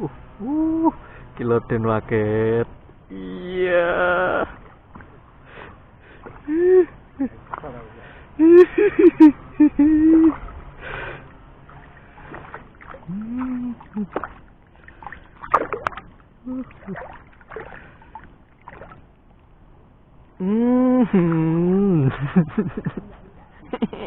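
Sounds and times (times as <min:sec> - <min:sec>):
water sloshing and splashing: 0:04.2 - 0:20.4.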